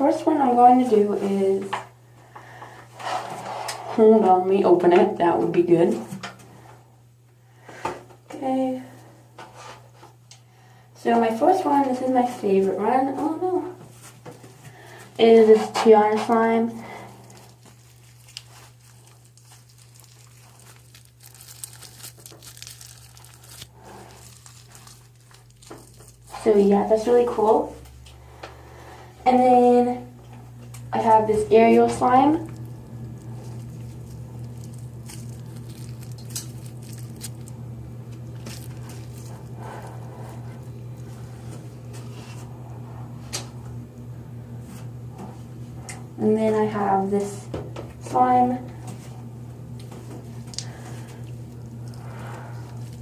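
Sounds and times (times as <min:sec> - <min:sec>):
steady low hum: 0:00.0 - 0:53.0
slime squished crackling and popping: 0:17.2 - 0:26.3, 0:32.0 - 0:41.1, 0:50.5 - 0:53.0.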